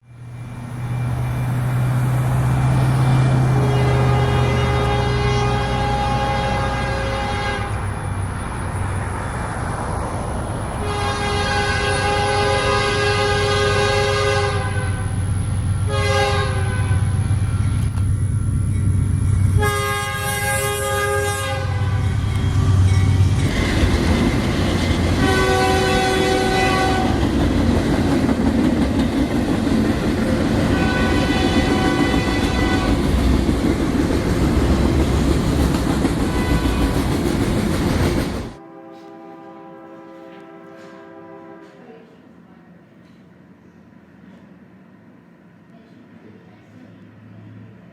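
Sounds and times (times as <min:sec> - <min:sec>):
train rumble and rail clatter: 0:00.0 - 0:47.9
locomotive air horn blasts: 0:03.5 - 0:07.9, 0:10.8 - 0:15.2, 0:15.8 - 0:17.3, 0:19.6 - 0:24.1, 0:25.2 - 0:27.2, 0:30.6 - 0:33.1, 0:36.3 - 0:37.1, 0:38.6 - 0:41.9.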